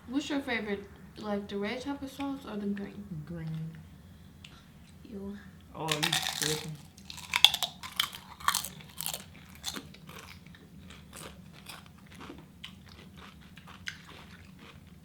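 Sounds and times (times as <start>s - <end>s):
crunchy food being chewed: 5.9s - 15.0s.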